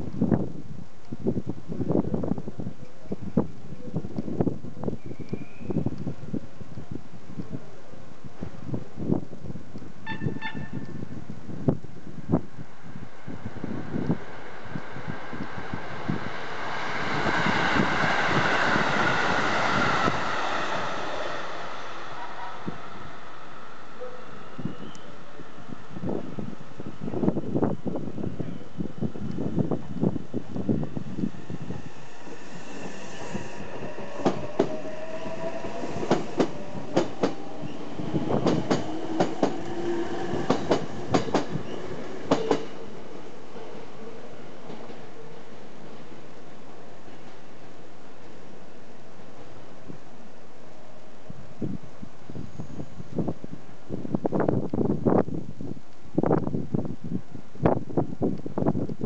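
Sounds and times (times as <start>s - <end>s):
train passing: 10.0s - 54.5s
train wheels clacking over rail joints: 36.0s - 37.5s, 38.3s - 42.8s.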